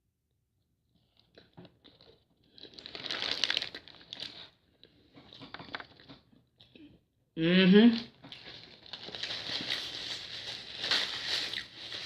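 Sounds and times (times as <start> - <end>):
paper wrapper crinkling: 2.0 - 4.5, 8.4 - 12.0.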